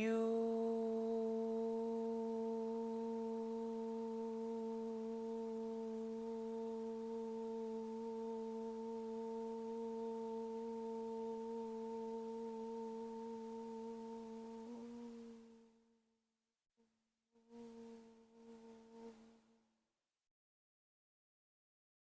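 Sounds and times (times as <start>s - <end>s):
steady held tone: 0.0s - 4.1s.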